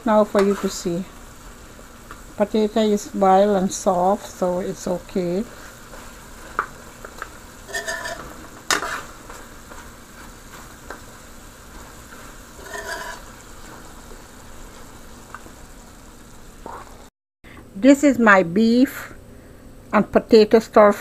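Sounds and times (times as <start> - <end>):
faint sizzle: 0.0 - 21.0
metal spoon scraping a pot: 7.7 - 9.1, 12.6 - 13.3.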